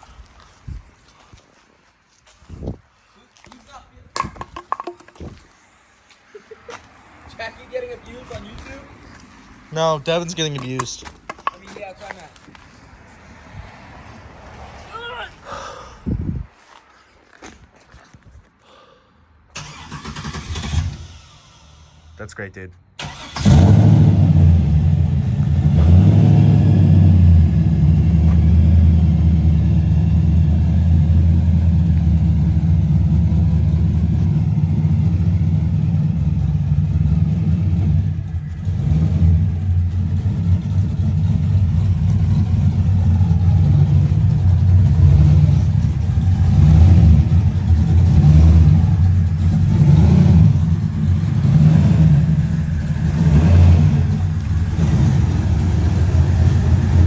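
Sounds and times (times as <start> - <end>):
car engine running: 23.0 - 57.0.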